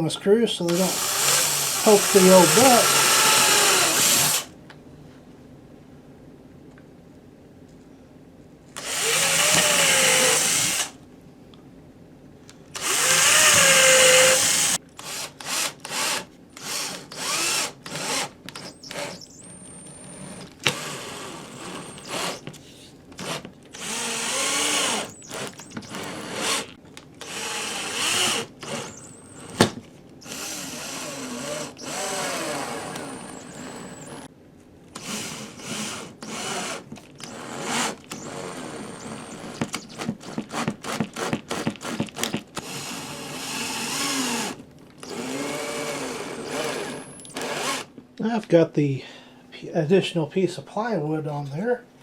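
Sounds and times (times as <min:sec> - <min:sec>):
drill driving screws: 0:00.7 - 0:04.5, 0:08.8 - 0:11.0, 0:12.8 - 0:22.5, 0:23.2 - 0:34.3, 0:35.0 - 0:47.9
power drill boring into plywood: 0:00.7 - 0:04.5, 0:08.8 - 0:11.0, 0:12.8 - 0:22.5, 0:23.2 - 0:34.3, 0:35.0 - 0:47.9.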